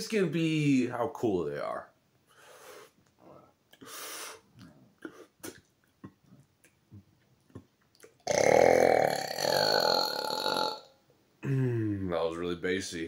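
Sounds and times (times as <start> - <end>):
man burping loudly: 8.2 - 12.1.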